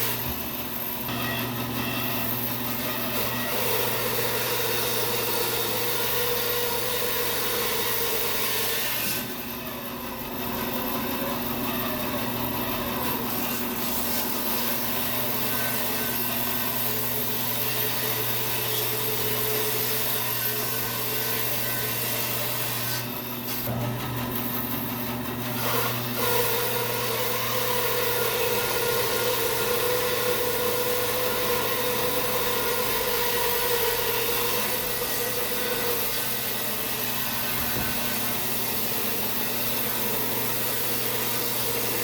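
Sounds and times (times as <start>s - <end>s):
bandsaw cutting log: 0.0s - 42.0s
motor hum: 9.1s - 42.0s.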